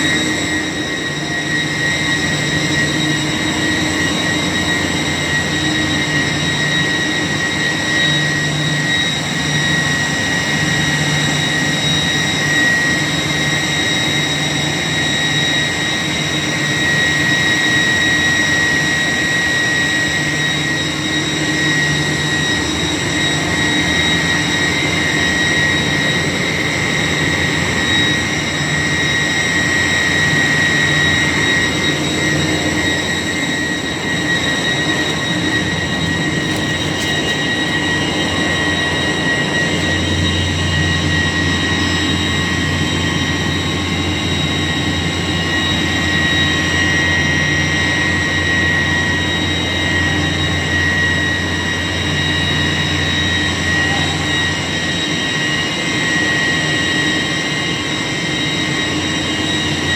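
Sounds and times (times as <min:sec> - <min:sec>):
compressor whine: 0:00.0 - 0:59.9.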